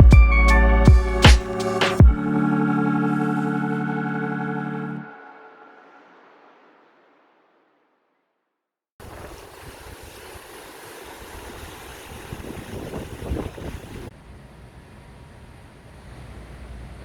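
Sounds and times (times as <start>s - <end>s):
waves washing: 9.0s - 14.1s
wind buffeting microphone: 11.2s - 14.1s.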